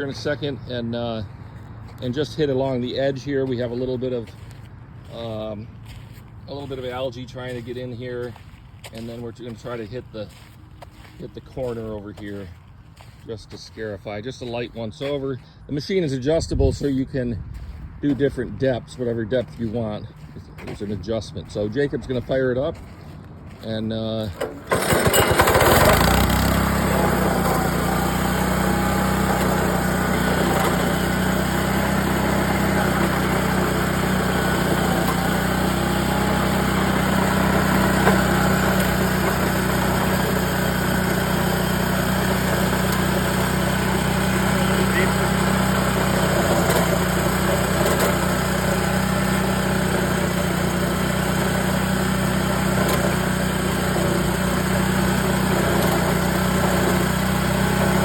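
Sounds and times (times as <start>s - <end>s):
machine engine running: 17.6s - 58.0s.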